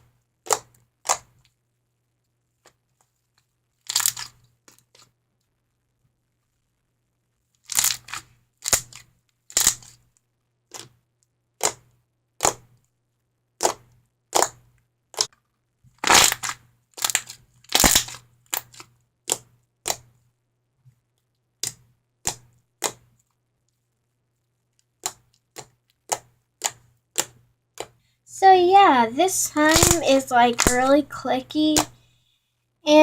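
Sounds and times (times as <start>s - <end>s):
slime clicking pops: 11.6s - 11.8s, 12.4s - 12.6s, 13.6s - 14.6s, 16.0s - 20.0s, 29.7s - 30.0s, 30.6s - 30.9s.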